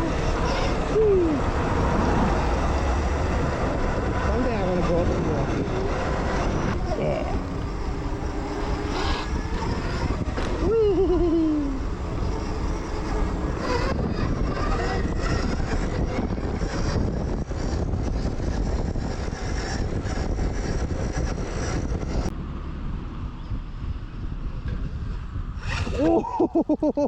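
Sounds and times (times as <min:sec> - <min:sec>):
tyres rolling on trail: 0:00.0 - 0:23.4
wind noise: 0:00.0 - 0:27.0
person shouting whee: 0:10.6 - 0:11.8, 0:26.0 - 0:26.5.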